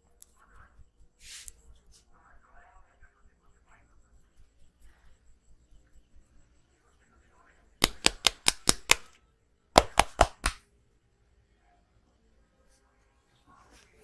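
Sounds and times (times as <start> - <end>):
hands slapping head: 7.8 - 9.2, 9.8 - 10.6.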